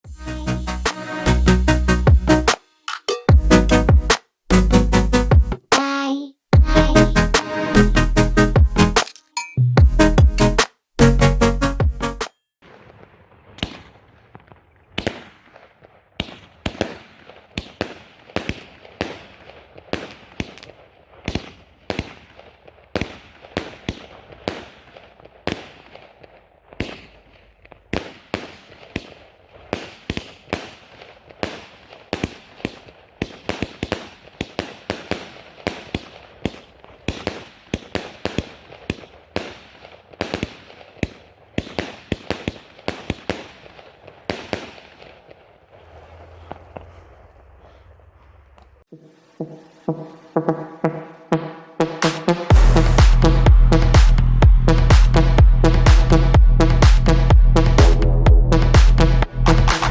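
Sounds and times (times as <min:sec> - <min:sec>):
firework bangs with crackling: 0:12.6 - 0:50.8.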